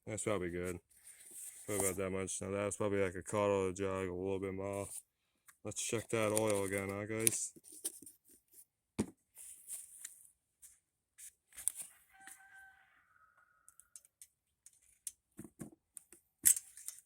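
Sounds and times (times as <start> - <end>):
handling clicks and rustles: 5.4 - 8.5, 13.9 - 17.0
distant rooster crowing: 12.0 - 14.0.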